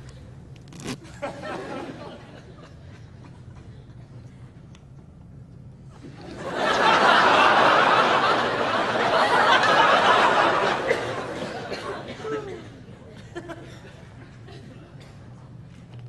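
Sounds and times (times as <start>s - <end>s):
audience laughing: 1.2s - 3.8s, 6.2s - 14.5s.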